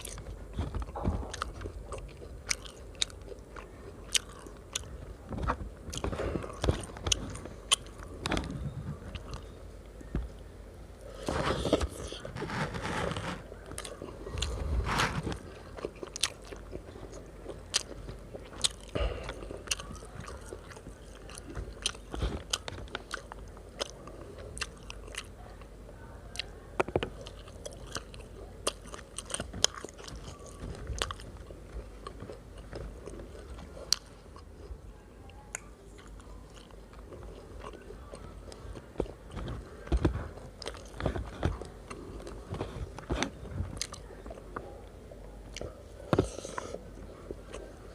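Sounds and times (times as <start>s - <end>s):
chewing and biting: 0.0s - 9.5s, 11.1s - 25.7s, 26.3s - 34.7s, 35.5s - 47.9s
crunching clicks: 35.5s - 46.8s.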